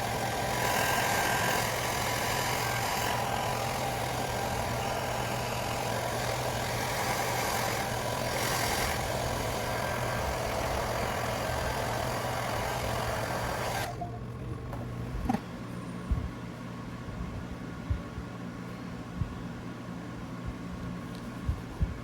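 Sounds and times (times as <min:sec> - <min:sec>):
machine humming: 0:00.0 - 0:15.2.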